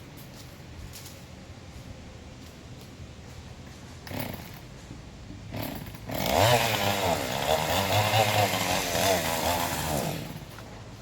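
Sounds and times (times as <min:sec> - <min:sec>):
chainsaw cutting log: 0:04.0 - 0:04.6, 0:05.5 - 0:10.7.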